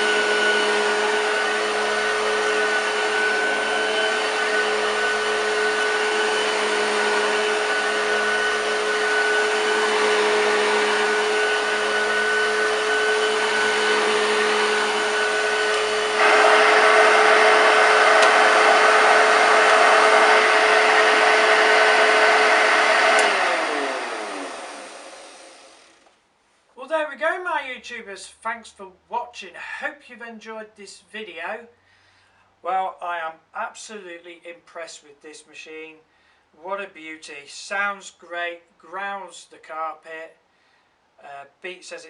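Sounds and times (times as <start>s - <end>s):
upright vacuum cleaner running: 0.0s - 26.2s.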